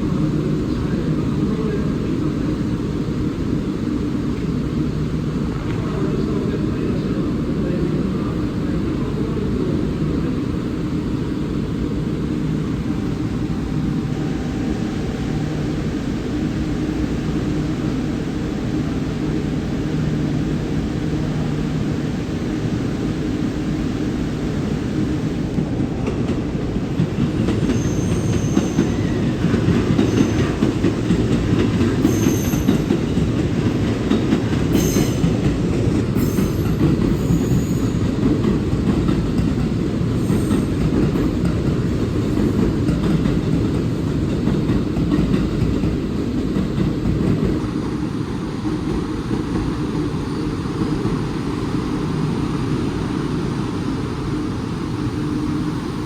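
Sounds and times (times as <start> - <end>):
train rumbling: 0.0 - 56.0
high wheel squeals: 27.6 - 29.4, 32.0 - 32.9.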